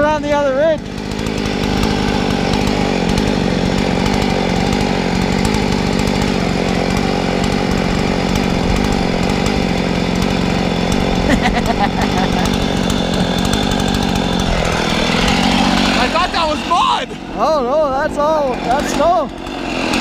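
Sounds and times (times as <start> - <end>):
chainsaw engine running: 0.0 - 20.0.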